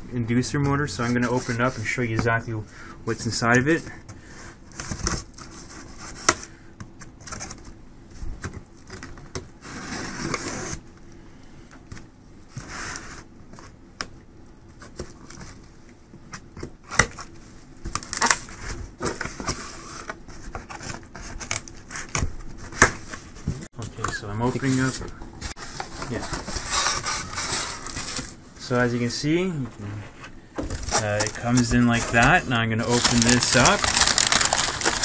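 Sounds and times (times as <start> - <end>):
cardboard scraping and rubbing: 9.6 - 10.8, 24.5 - 29.1.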